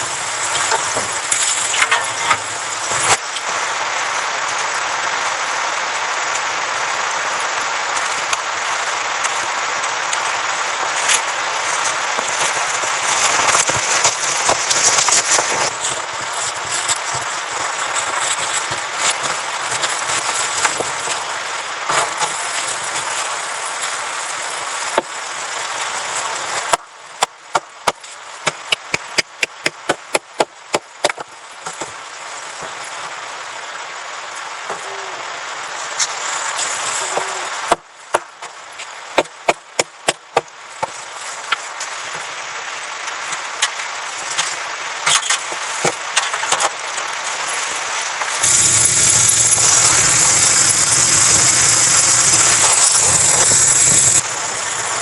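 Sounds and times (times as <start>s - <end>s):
steady rushing noise: 0.0s - 55.0s
sharp knocks in runs: 26.7s - 31.9s.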